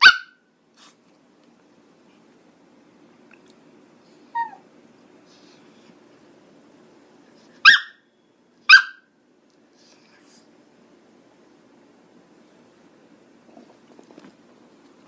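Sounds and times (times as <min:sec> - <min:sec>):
small dog barking: 0:00.0 - 0:00.4, 0:07.6 - 0:08.0, 0:08.7 - 0:09.1
small dog yipping: 0:00.0 - 0:00.4, 0:04.3 - 0:04.6, 0:07.6 - 0:08.0, 0:08.7 - 0:09.1.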